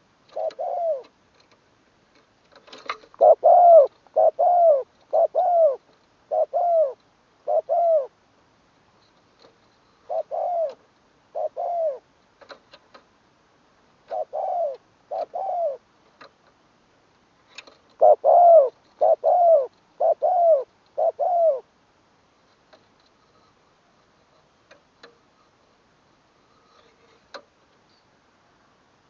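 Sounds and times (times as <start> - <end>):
dove cooing: 0.2 - 1.2, 3.2 - 8.2, 10.0 - 12.1, 14.0 - 15.9, 18.0 - 21.7.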